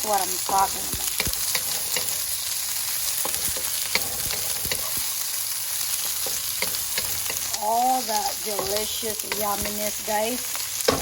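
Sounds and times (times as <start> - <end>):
vegetables sizzling in frying pan: 0.0 - 11.0
utensil clicking and scraping: 3.2 - 5.1.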